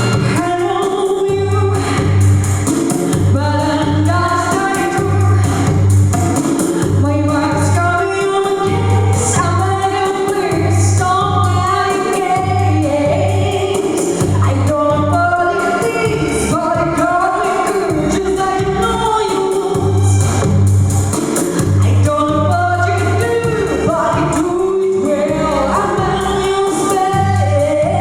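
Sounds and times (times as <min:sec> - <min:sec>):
low bass beat: 0:00.0 - 0:28.0
woman singing pop-rock ballad: 0:00.3 - 0:02.3, 0:03.1 - 0:05.7, 0:06.7 - 0:20.1, 0:21.7 - 0:28.0.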